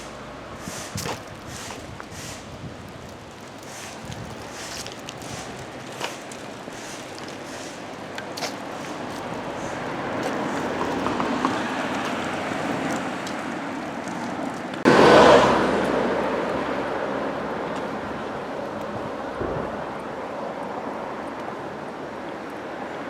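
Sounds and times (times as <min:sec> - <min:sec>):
vehicle passing: 0:08.6 - 0:19.9.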